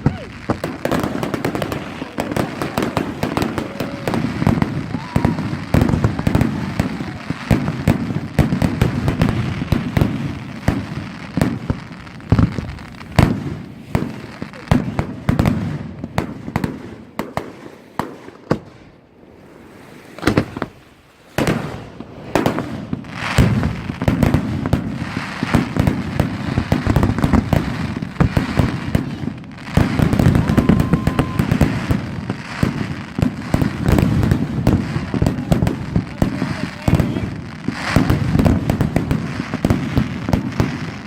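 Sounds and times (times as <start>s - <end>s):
fireworks bangs and crackling: 0.0s - 41.0s.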